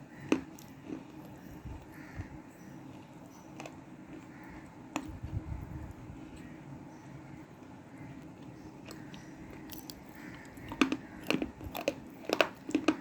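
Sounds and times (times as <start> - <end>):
person chewing: 0.0 - 2.0, 8.2 - 13.0
sharp crunches: 9.7 - 13.0.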